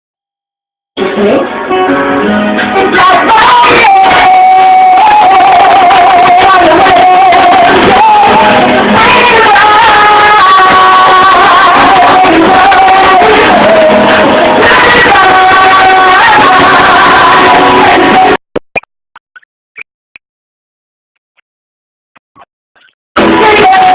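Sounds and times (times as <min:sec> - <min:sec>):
song accompaniment: 0:01.0 - 0:18.4, 0:23.2 - 0:23.9.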